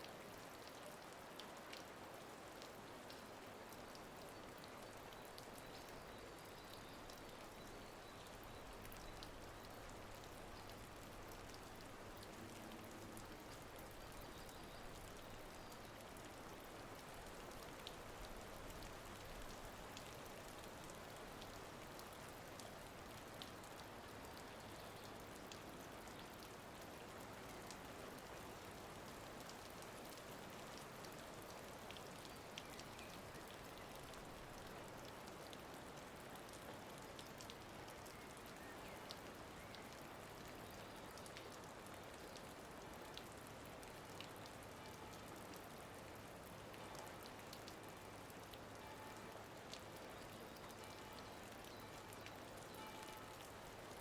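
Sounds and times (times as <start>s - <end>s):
faint steady hiss: 0.0s - 54.0s.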